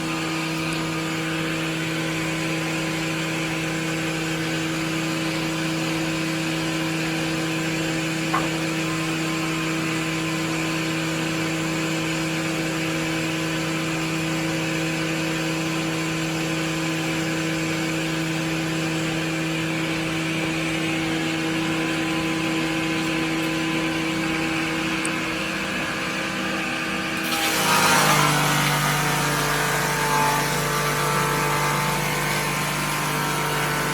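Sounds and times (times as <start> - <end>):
machine humming: 8.3 - 11.2.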